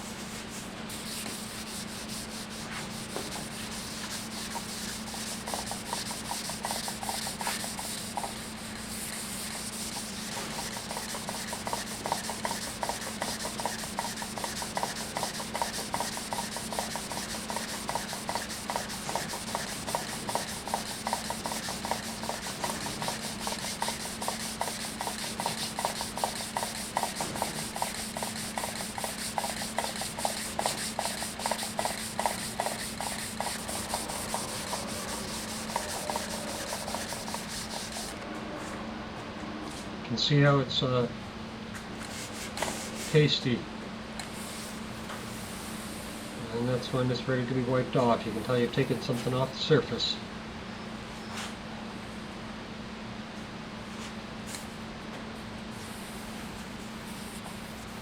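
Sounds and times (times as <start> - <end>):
sandpaper wet sanding: 0.1 - 38.2, 55.9 - 58.0.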